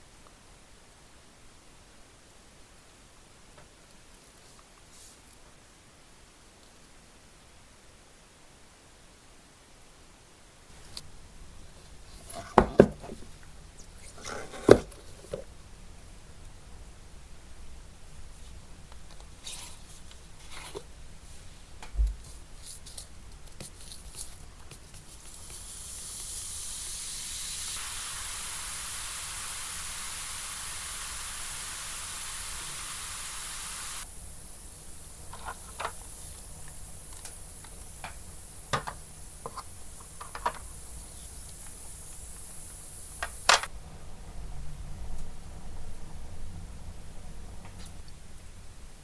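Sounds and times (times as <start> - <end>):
steady spraying hiss: 17.1 - 43.7.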